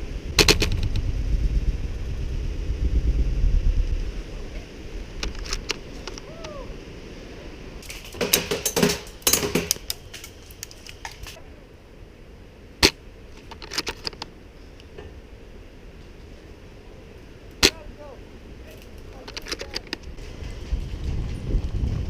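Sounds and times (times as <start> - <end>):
rattling clicks: 18.7 - 20.2.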